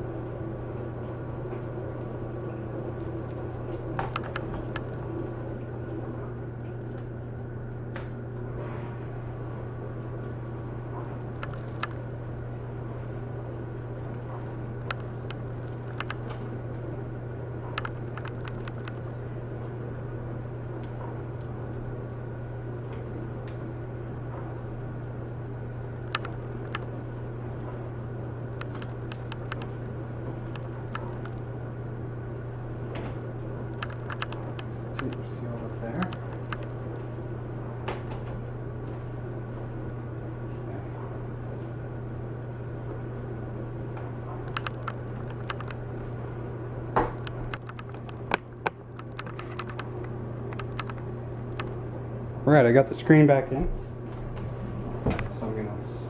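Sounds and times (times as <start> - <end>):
steady low hum: 0.0 - 56.0
small parts clicking and tapping: 14.8 - 16.4, 17.7 - 19.0, 26.0 - 26.9, 28.6 - 29.7, 33.7 - 35.2, 44.5 - 45.8, 50.5 - 51.7.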